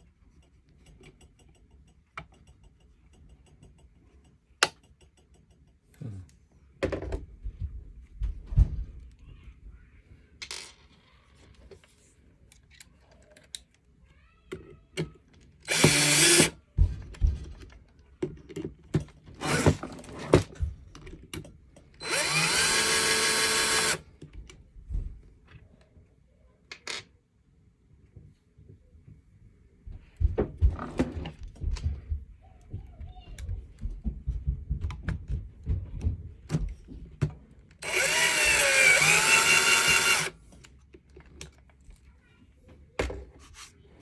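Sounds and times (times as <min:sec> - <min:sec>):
parts clicking and knocking: 0:00.3 - 0:05.8, 0:33.4 - 0:42.0
power drill running: 0:15.7 - 0:16.6, 0:19.4 - 0:19.8, 0:22.0 - 0:24.0, 0:37.8 - 0:40.4.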